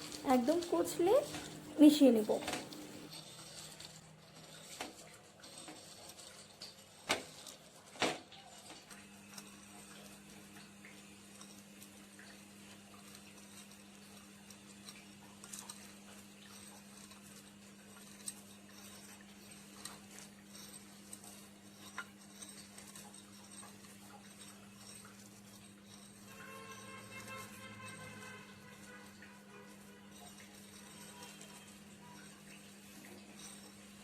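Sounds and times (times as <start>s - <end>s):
dried chili crackling being crushed: 0.0s - 3.1s.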